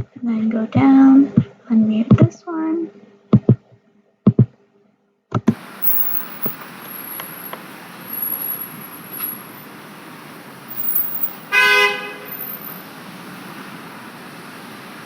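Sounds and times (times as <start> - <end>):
traffic noise: 5.5 - 15.0
car horn honking: 10.9 - 12.4.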